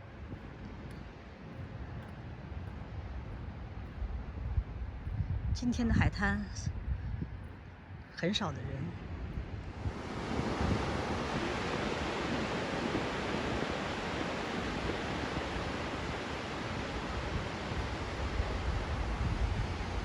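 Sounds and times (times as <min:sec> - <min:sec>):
wind rumbling on microphone: 0:00.0 - 0:20.0
ocean surf on a beach: 0:07.4 - 0:20.0.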